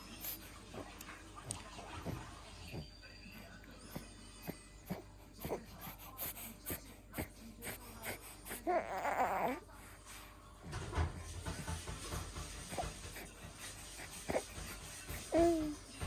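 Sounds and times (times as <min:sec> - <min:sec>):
baby crying: 0:08.6 - 0:09.6.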